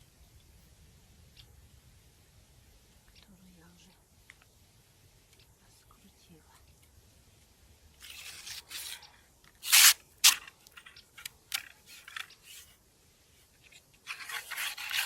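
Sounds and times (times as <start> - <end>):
loud short scrape: 9.6 - 10.4.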